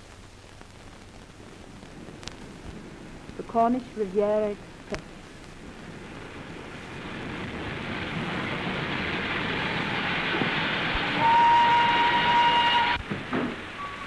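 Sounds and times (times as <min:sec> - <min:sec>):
steam train running: 0:05.9 - 0:14.0
steam locomotive whistle: 0:10.9 - 0:13.0, 0:13.6 - 0:14.0.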